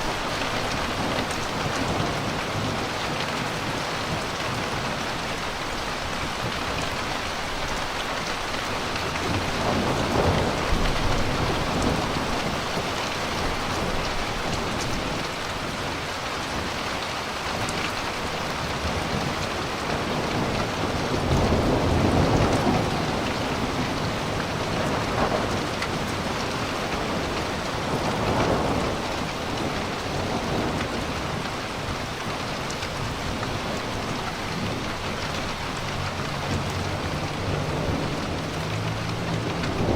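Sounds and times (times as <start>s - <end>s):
steady rain falling: 0.0s - 39.9s
rolling thunder: 8.9s - 15.3s, 18.8s - 32.1s, 32.9s - 39.9s.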